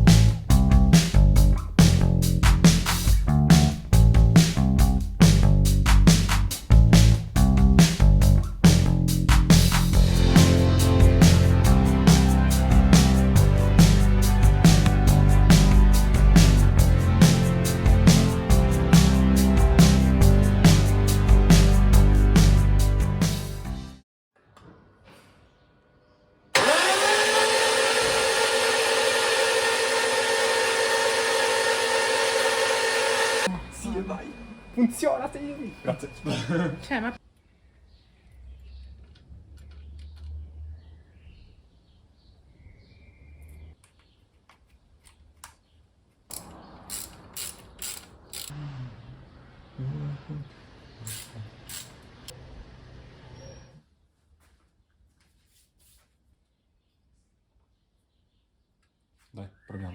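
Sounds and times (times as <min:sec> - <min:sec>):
electric motor whining: 0:26.6 - 0:34.2
hand tools clicking on metal: 0:46.3 - 0:48.5, 0:51.1 - 0:52.0.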